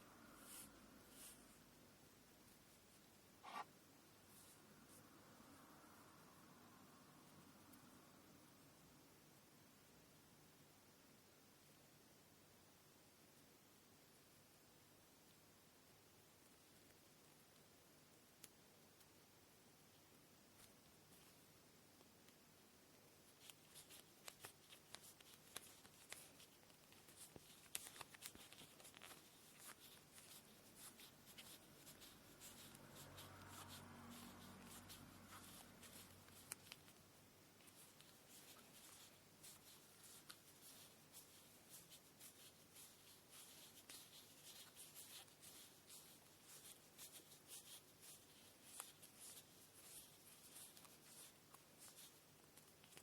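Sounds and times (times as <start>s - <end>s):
hands rustling thread: 0.0s - 1.8s, 23.1s - 53.0s
small clicks of handling thread: 34.8s - 37.0s.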